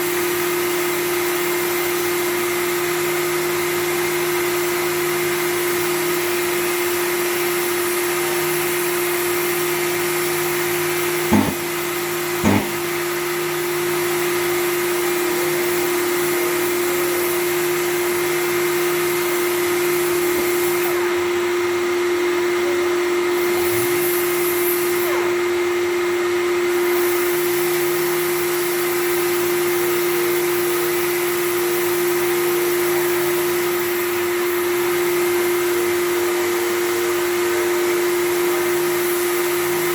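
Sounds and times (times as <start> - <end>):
sharp knocks: 11.3 - 13.1.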